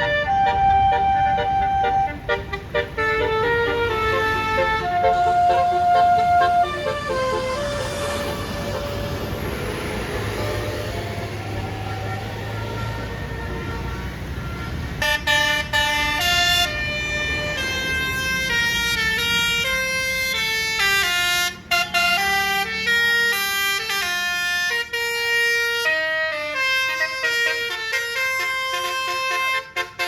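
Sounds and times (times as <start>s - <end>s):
bus horn playing a melody: 0.0s - 9.4s, 12.0s - 30.0s
low engine rumble: 0.0s - 22.9s.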